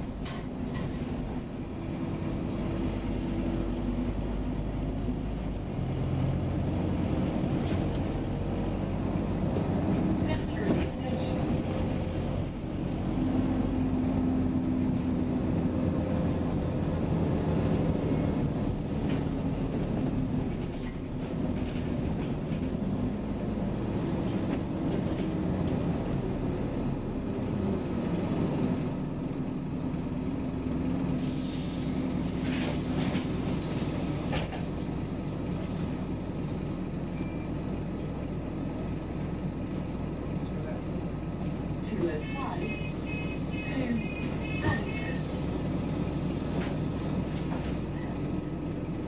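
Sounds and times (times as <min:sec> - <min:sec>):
bus diesel engine running: 0:00.0 - 0:49.0
air hissing with clicks: 0:31.2 - 0:36.0.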